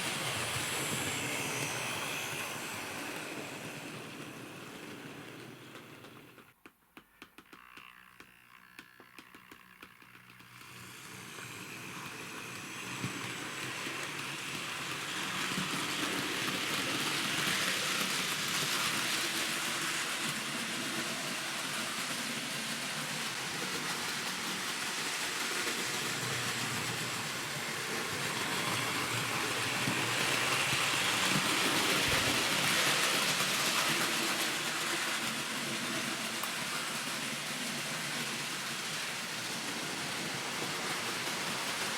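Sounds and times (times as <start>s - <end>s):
model train whirring on track: 0.0s - 41.9s.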